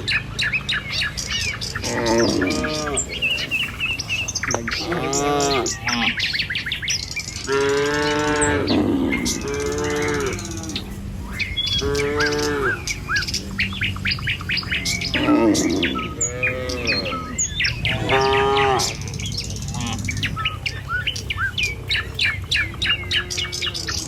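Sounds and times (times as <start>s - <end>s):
birds chirping: 0.0s - 24.0s
cattle mooing: 1.8s - 6.3s, 7.5s - 13.8s, 14.6s - 20.8s, 22.5s - 24.0s.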